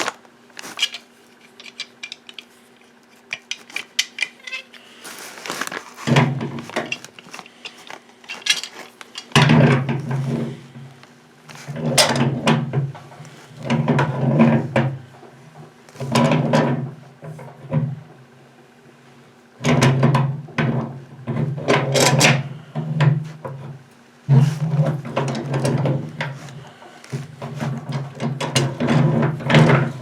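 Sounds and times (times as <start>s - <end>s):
metal pipe clinking and scraping: 0.6s - 10.4s.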